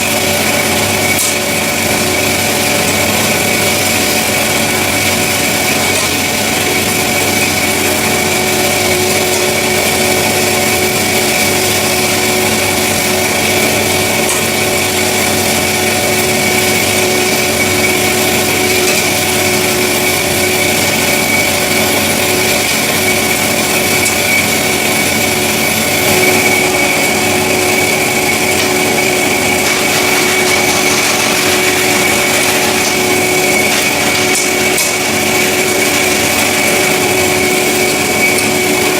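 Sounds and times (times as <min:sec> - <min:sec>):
band saw running: 0:00.0 - 0:38.9.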